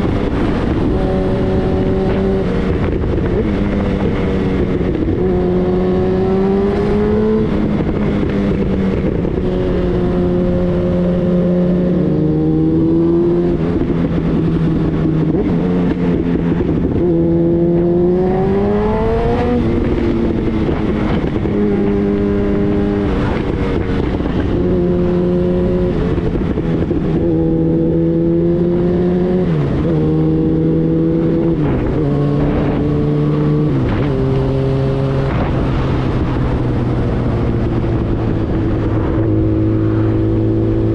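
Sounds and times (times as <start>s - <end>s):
motorcycle engine revving: 0.0s - 40.9s.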